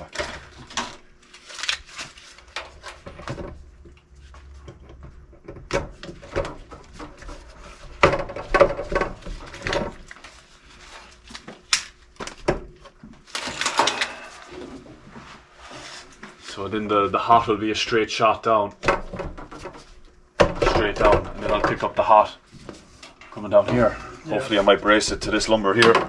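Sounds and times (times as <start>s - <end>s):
objects being handled: 0.0s - 16.6s.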